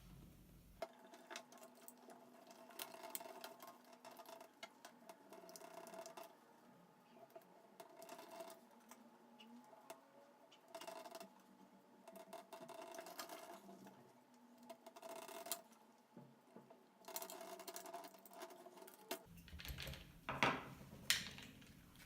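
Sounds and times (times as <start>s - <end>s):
small parts clicking and rattling: 0.8s - 6.3s, 14.8s - 15.8s, 17.0s - 20.4s.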